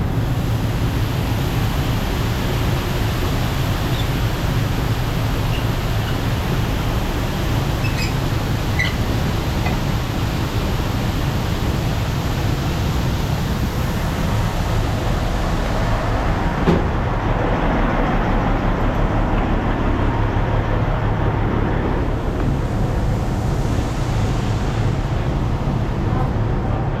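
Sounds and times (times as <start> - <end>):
dense rushing noise: 0.0 - 27.0
farm machinery engine running: 0.0 - 27.0
brief knock: 16.6 - 16.9.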